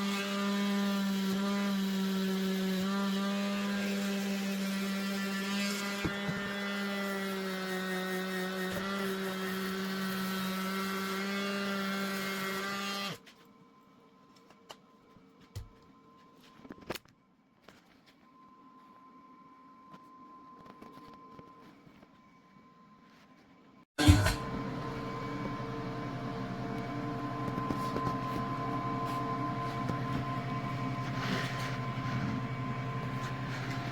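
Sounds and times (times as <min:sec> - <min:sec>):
machine hum: 0:24.0 - 0:33.9.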